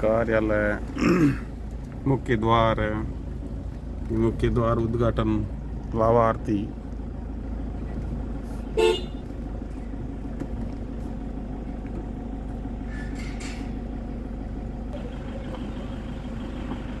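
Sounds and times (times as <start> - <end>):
car driving rumble: 0.0 - 17.0
car horn toot: 8.8 - 9.3.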